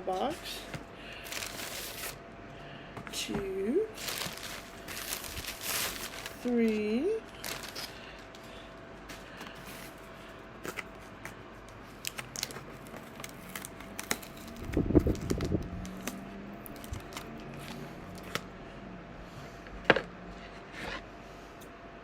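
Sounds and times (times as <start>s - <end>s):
packaging rustling and scraping: 0.1s - 2.2s, 3.9s - 18.4s
cardboard boxes crinkling: 1.1s - 2.2s, 3.9s - 10.0s, 12.0s - 16.1s, 16.7s - 18.4s.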